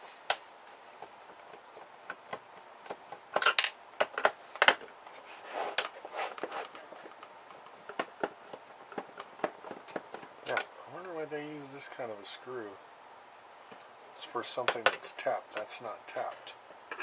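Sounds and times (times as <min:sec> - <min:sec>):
scraping: 0:05.1 - 0:10.7.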